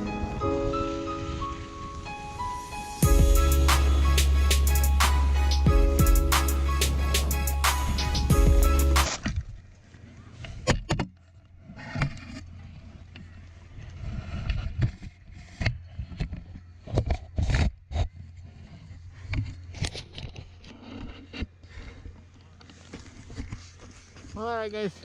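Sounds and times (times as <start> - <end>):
music: 0.0 - 9.2.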